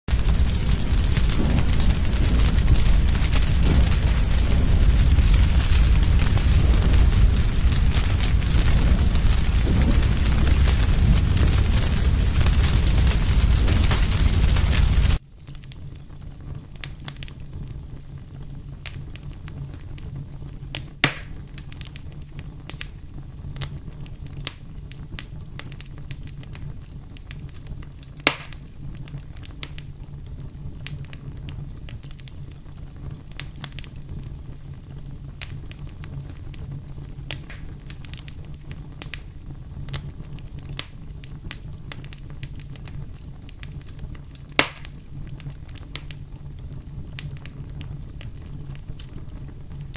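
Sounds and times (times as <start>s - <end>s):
fire popping and snapping: 0.0s - 49.9s
low rumble: 0.1s - 15.2s
campfire wood crackling: 0.1s - 49.9s.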